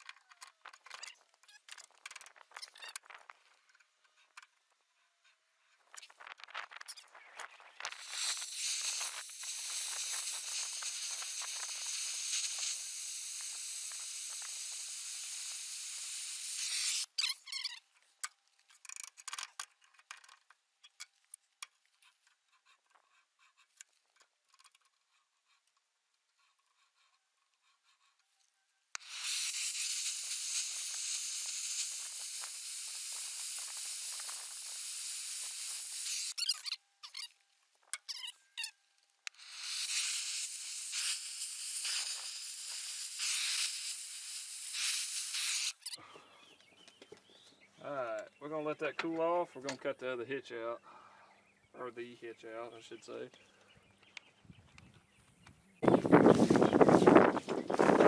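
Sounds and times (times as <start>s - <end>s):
cutting torch hissing: 7.8s - 17.1s, 29.0s - 36.6s, 39.3s - 46.0s.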